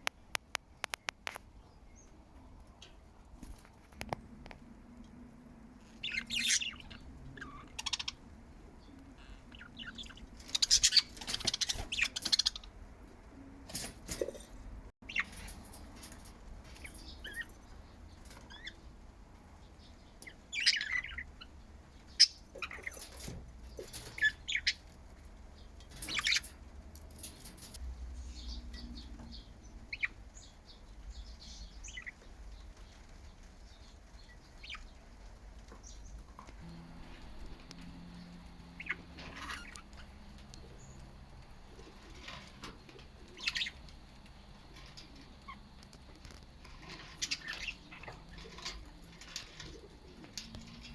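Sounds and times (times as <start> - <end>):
budgies chirping and chattering: 5.9 - 12.8, 15.0 - 18.9, 19.8 - 24.8, 25.9 - 26.6, 37.1 - 44.0, 44.6 - 50.9.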